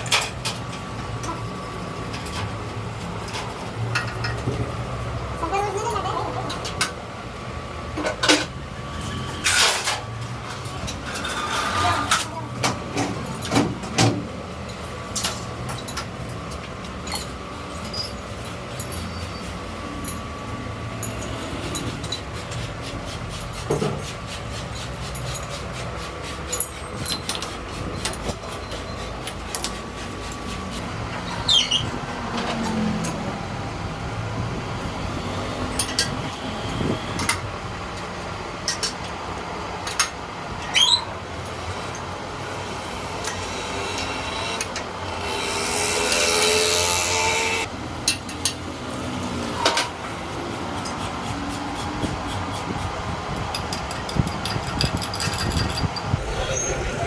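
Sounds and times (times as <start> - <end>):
metal rasping and scraping: 8.9 - 12.3, 21.4 - 31.9, 41.3 - 47.7
steady machine hum: 41.1 - 48.0.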